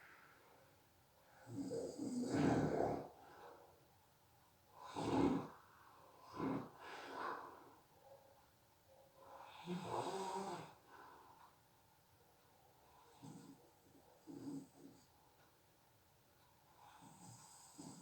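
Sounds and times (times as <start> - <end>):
person snoring: 1.5 - 3.1.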